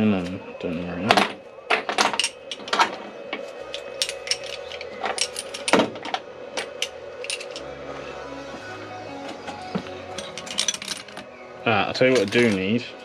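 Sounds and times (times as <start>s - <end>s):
metal tools clinking: 1.1s - 3.0s, 3.7s - 7.6s, 10.1s - 11.3s, 12.1s - 12.7s.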